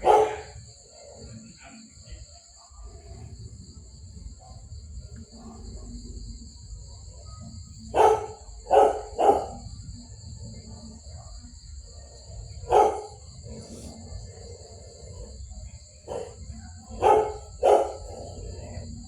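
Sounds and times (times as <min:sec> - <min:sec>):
puppy barking: 0:00.0 - 0:00.6, 0:07.9 - 0:09.7, 0:12.6 - 0:13.9, 0:16.0 - 0:18.9.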